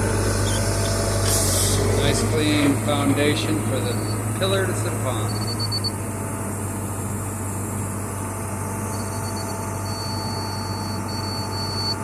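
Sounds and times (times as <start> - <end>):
low mechanical hum: 0.0 - 12.0
thin high steady tone: 8.8 - 12.0.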